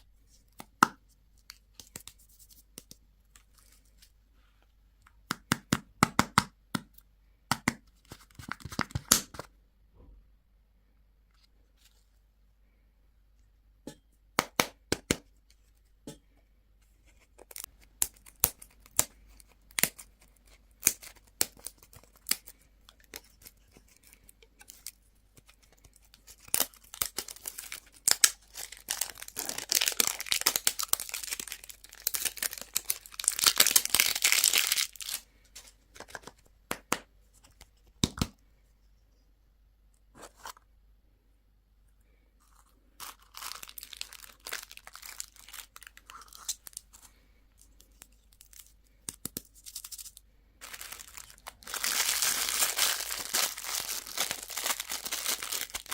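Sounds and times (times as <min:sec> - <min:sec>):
candy wrapper crinkling and tearing: 0:17.3 - 0:35.3, 0:42.4 - 0:55.9.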